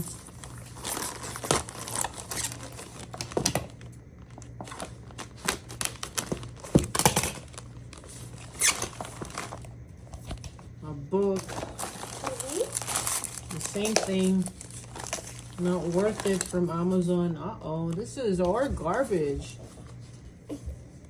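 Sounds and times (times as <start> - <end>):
packaging crinkling and rustling: 0.0 - 10.7, 11.3 - 17.1.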